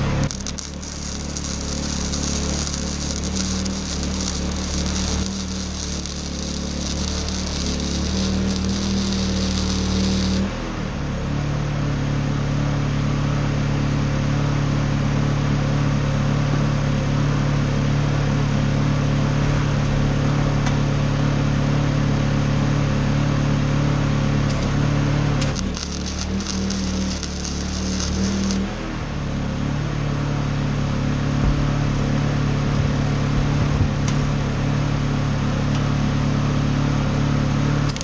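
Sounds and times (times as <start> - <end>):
generator engine running: 0.0 - 10.6, 24.5 - 29.3.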